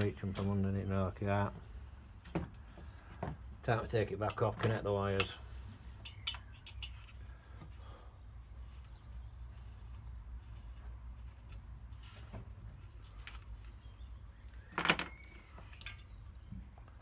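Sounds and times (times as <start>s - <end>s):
small parts clicking and knocking: 6.0s - 7.7s, 14.6s - 16.2s.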